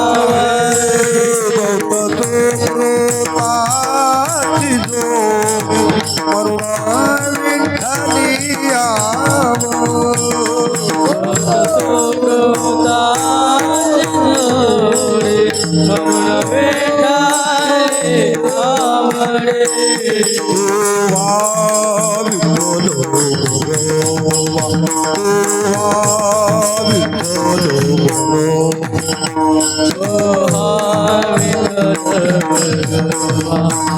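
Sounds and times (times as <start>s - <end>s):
drumming: 0.0s - 12.4s
metallic hand percussion jingle: 0.0s - 33.9s
person singing devotional melody: 0.0s - 33.9s.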